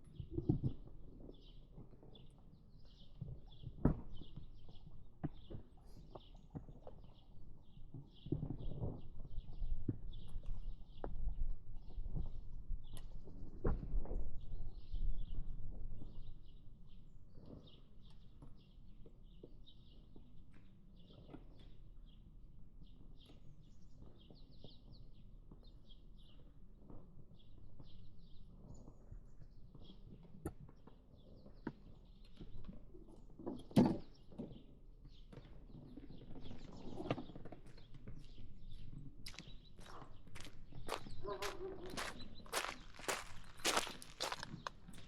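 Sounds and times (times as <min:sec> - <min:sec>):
small birds chirping: 0:33.5 - 0:45.0.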